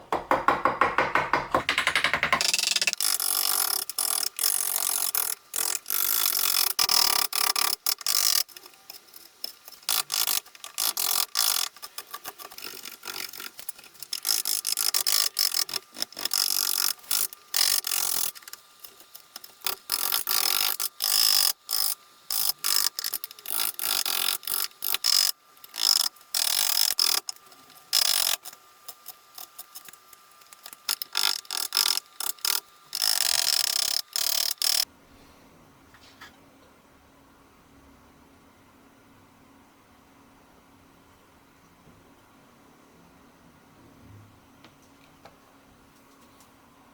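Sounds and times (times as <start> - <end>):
even clicks: 0.0 - 3.0.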